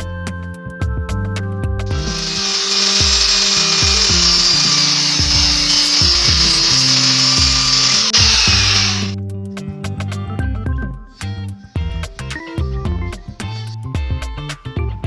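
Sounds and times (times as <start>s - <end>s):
background music: 0.0s - 15.0s
power tool working wood: 1.9s - 9.1s.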